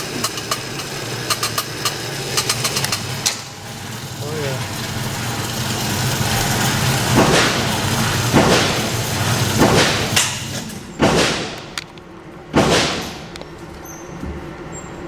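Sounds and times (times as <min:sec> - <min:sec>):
pistol shots with echo: 0:11.0 - 0:11.8, 0:12.5 - 0:13.3.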